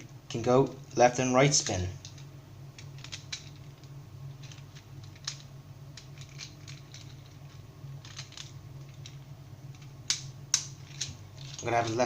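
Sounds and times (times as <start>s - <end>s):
steady low hum: 0.0s - 12.0s
plastic parts clicking: 2.8s - 9.2s.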